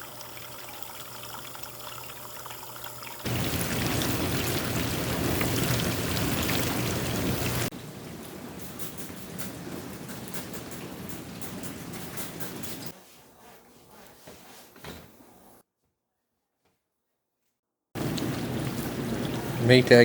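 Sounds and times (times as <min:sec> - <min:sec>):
water rushing into dishwasher: 0:00.0 - 0:12.9, 0:18.0 - 0:20.0.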